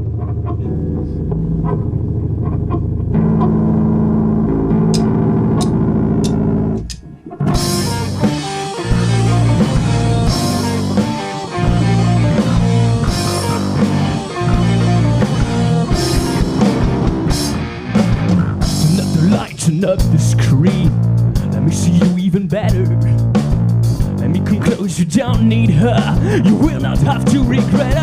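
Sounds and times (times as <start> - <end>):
held guitar chord: 0.6 - 18.5
rock band playing: 0.7 - 28.0
sharp clicks: 4.9 - 7.4.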